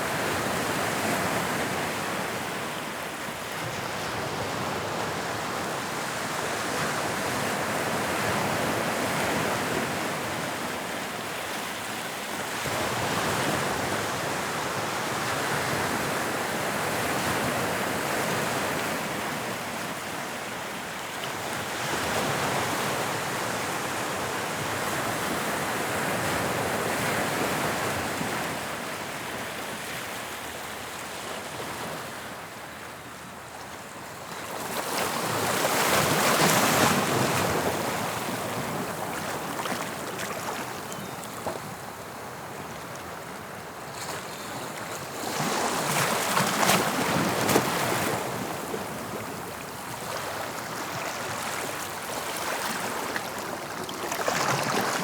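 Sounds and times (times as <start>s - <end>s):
sea waves breaking on shore: 34.2s - 55.0s.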